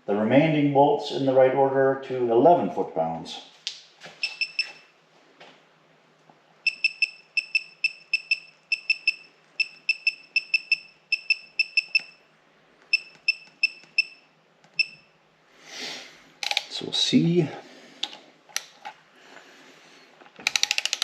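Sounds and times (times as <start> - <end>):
ratchet wrench clicking: 20.5 - 21.0.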